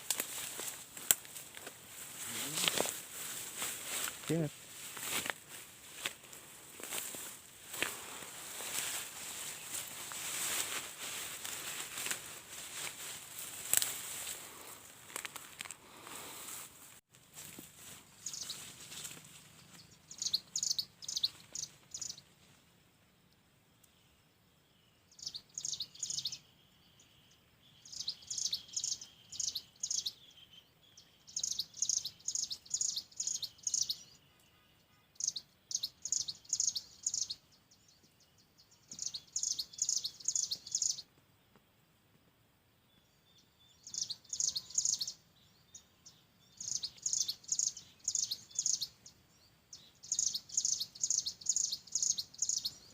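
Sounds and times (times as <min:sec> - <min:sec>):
bird chirping rapidly: 0:18.2 - 0:18.6, 0:19.8 - 0:22.2, 0:27.8 - 0:30.6, 0:31.3 - 0:34.2, 0:35.1 - 0:37.4, 0:38.9 - 0:41.0, 0:43.8 - 0:45.2, 0:46.5 - 0:49.1, 0:49.7 - 0:52.9.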